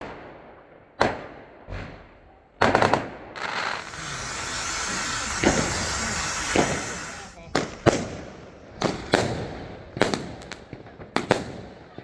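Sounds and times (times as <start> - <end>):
steady hiss: 3.4 - 7.4
firecracker string cracking: 3.4 - 8.2
firework bang: 3.4 - 10.4.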